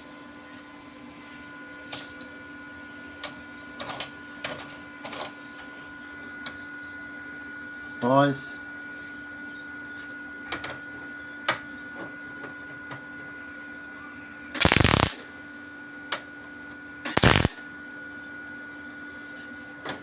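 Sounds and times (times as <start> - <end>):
steady hum: 14.0 - 15.7, 16.9 - 17.9
welding arc bursts: 14.6 - 15.3, 17.1 - 17.6.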